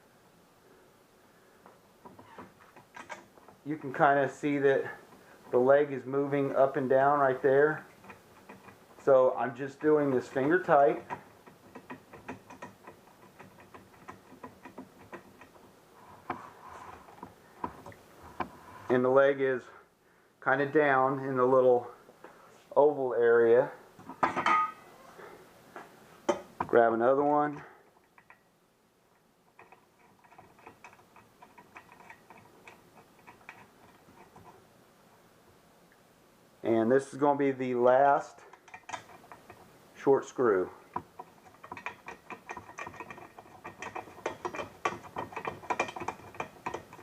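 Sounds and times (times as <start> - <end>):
screw turning with metal clicks: 2.0 - 3.6, 6.3 - 16.4, 26.3 - 28.5, 29.2 - 34.6, 38.5 - 39.7, 40.8 - 47.0
screw clicking against chair leg: 9.9 - 15.6, 38.6 - 39.7, 40.9 - 47.0.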